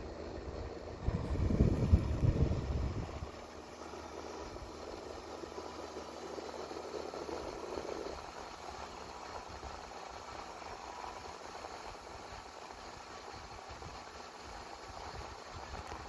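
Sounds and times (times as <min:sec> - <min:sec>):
air conditioner fan running: 0:00.0 - 0:16.0
heavy low rumble: 0:01.0 - 0:03.4.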